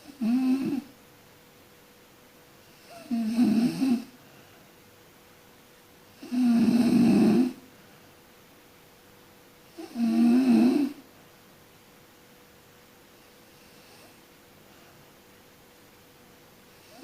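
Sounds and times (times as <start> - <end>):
person snoring: 0.0 - 0.9, 2.8 - 4.1, 6.2 - 7.6, 9.8 - 11.0.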